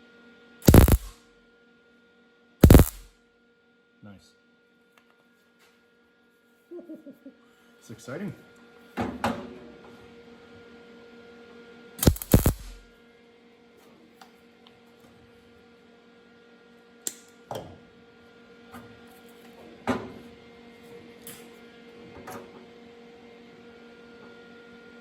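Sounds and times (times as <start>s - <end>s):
electrical hum: 0.6s - 1.2s, 2.6s - 3.1s, 12.0s - 12.8s.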